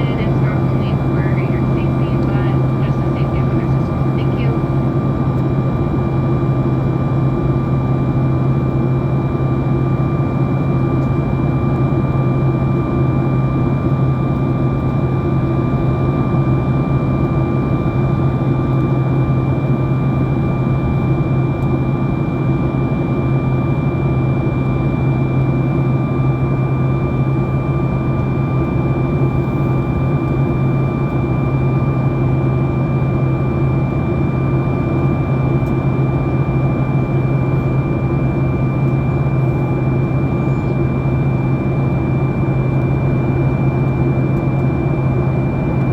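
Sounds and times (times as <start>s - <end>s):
thin steady whine: 0.0s - 4.9s
airplane cabin engine rush: 0.0s - 45.9s.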